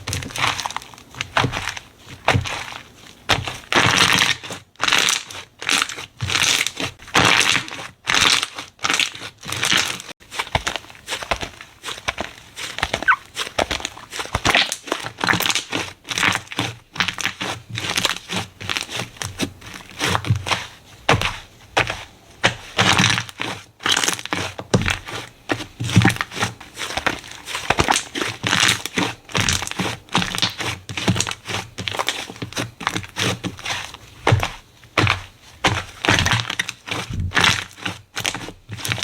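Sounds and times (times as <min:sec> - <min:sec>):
slime crackling and popping: 0:12.0 - 0:19.4, 0:26.0 - 0:32.1.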